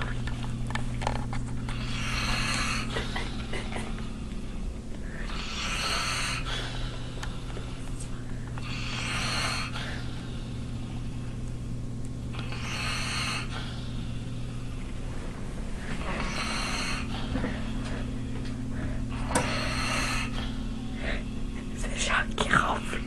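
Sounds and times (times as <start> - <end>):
steady low hum: 0.0 - 23.0
man snoring: 1.7 - 3.8, 5.1 - 7.1, 8.6 - 10.3, 12.4 - 13.9, 16.0 - 17.8, 19.1 - 21.2.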